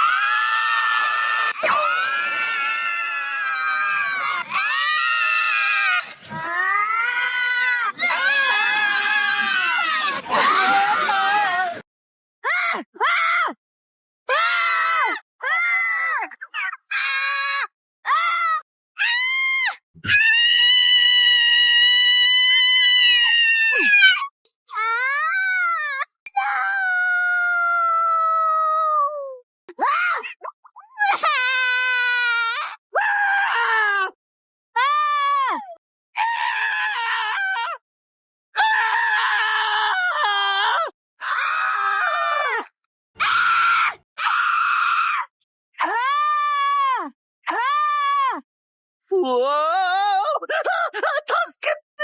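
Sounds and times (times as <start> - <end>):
cartoon character screaming: 0.0 - 11.8, 14.3 - 28.8, 38.6 - 42.6.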